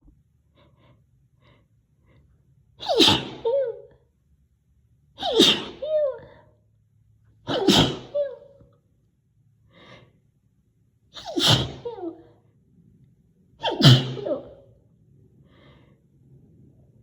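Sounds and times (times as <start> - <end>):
woman sneezing loudly: 2.8 - 4.0, 5.2 - 6.4, 7.5 - 8.6, 11.2 - 12.3, 13.6 - 14.6.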